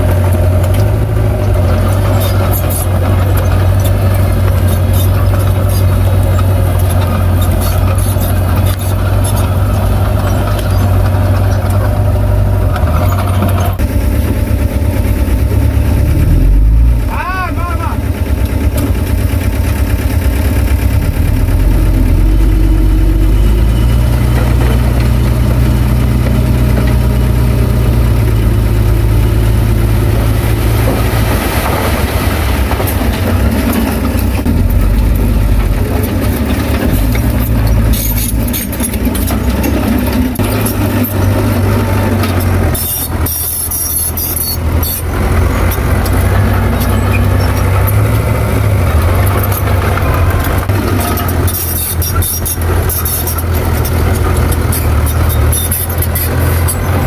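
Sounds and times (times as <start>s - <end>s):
heavy diesel engine running: 0.0s - 57.0s
metallic knocks and rattles: 32.7s - 57.0s.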